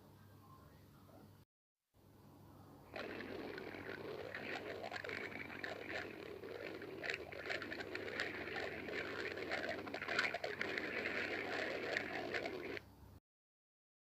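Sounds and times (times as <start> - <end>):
stomach growling and gurgling: 2.9 - 12.8.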